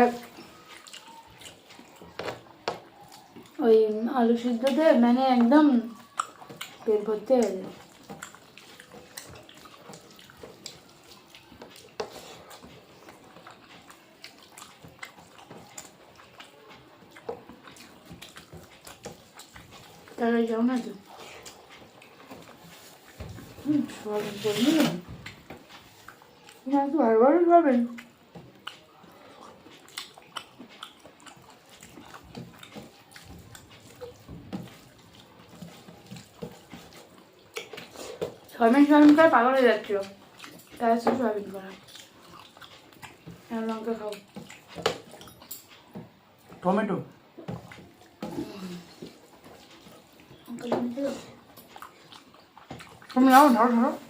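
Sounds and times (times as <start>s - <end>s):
wet chewing: 0.0s - 54.0s
mouth clicks and lip smacks: 27.9s - 34.2s.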